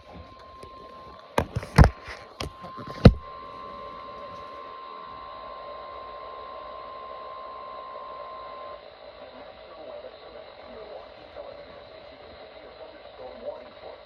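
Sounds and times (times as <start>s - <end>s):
radio pops: 0.0s - 3.3s.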